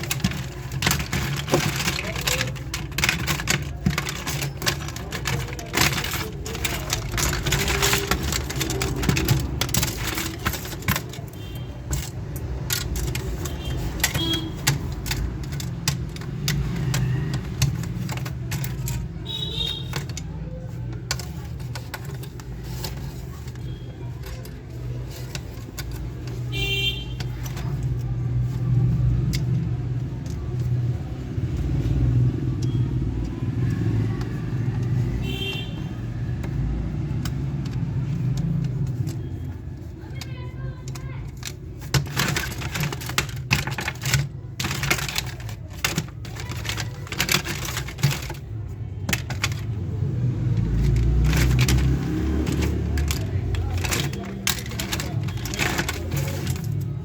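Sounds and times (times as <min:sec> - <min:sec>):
small hard parts rattling: 0:00.0 - 0:57.0.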